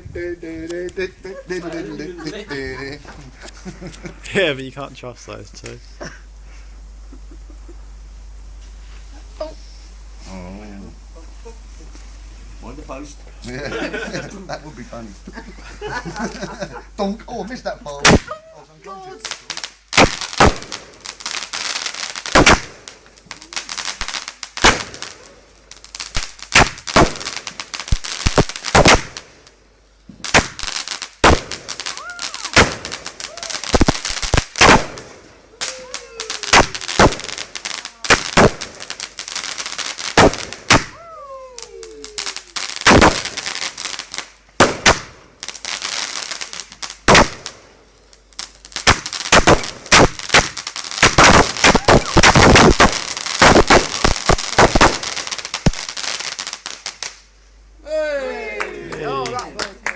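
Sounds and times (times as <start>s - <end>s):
fireworks bangs: 0.0s - 18.4s, 19.0s - 57.3s
fireworks crackling and hiss: 0.0s - 59.9s.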